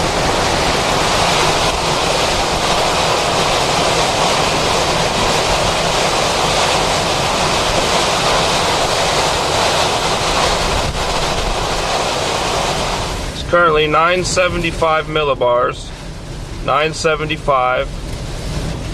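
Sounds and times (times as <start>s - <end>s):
strong wind on microphone: 0.0s - 13.5s.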